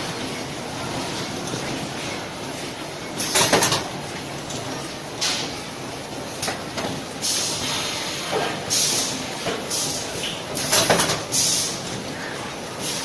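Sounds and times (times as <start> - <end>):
machine clacks: 3.2 - 5.6, 9.4 - 11.5.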